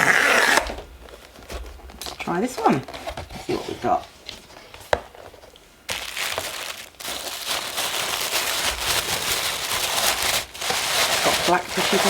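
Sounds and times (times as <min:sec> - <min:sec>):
tissue paper rustling: 0:05.9 - 0:12.0.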